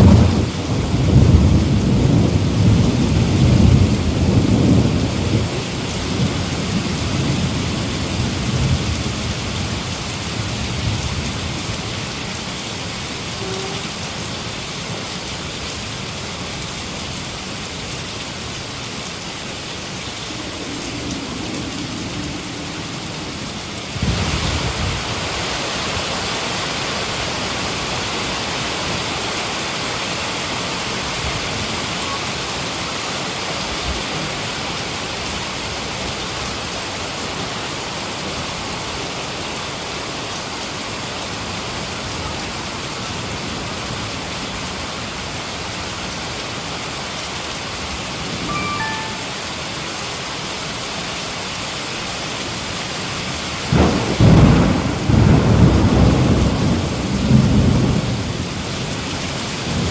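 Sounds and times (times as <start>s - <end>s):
rolling thunder: 0.0s - 9.6s, 53.7s - 59.9s
even hiss of rain: 0.0s - 59.9s
heavy rain falling: 0.0s - 59.9s.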